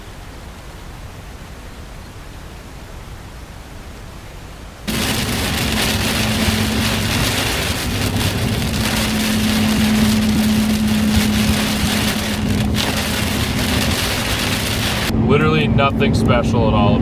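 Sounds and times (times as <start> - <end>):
tyre and rain hiss: 4.9 - 15.1
vehicle low hum: 4.9 - 17.0.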